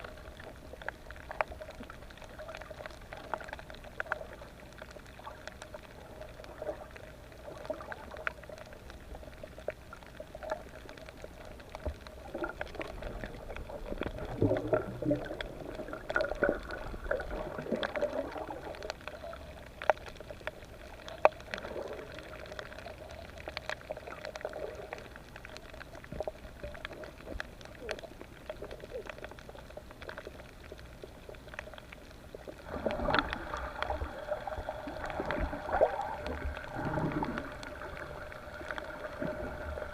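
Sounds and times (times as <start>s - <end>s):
sharp clicks and crackles: 0.0s - 39.9s
underwater bubbling and gurgling: 0.0s - 39.9s.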